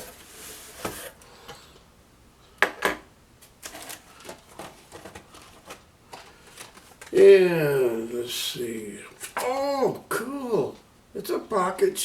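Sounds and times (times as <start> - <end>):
packaging rustling: 3.6 - 7.2.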